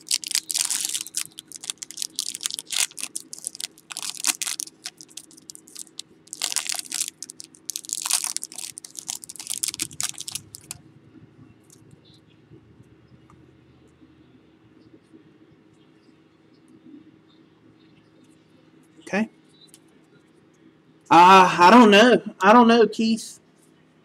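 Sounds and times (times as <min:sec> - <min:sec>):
foil wrapper crinkling: 0:00.0 - 0:10.8.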